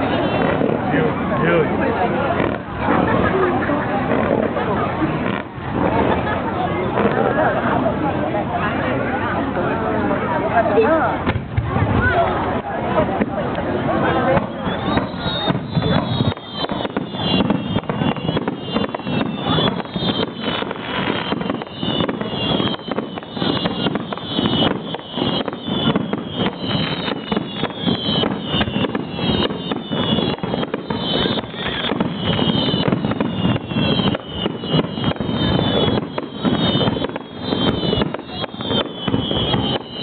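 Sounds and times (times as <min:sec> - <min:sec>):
firework bursts and crackle: 0:00.0 - 0:40.0
falling firework whistles: 0:14.2 - 0:40.0.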